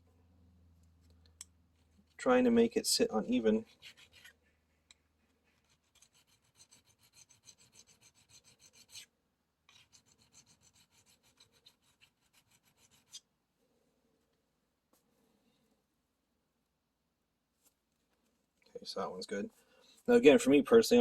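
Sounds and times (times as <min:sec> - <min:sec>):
file rubbing on copper: 0:03.2 - 0:04.4, 0:05.4 - 0:09.1, 0:09.7 - 0:13.2.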